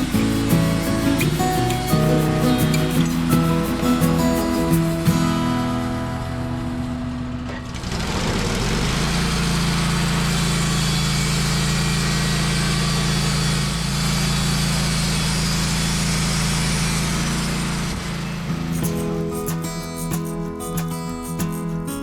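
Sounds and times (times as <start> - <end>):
sawmill engine revving: 5.8 - 18.6.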